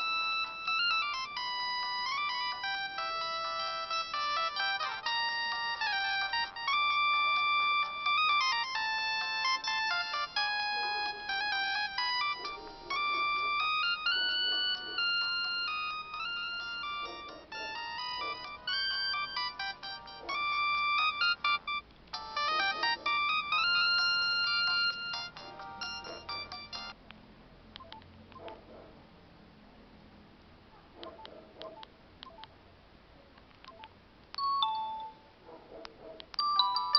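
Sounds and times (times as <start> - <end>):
phone polyphonic ringtone: 0.0 - 27.0, 34.4 - 35.3, 36.4 - 36.9.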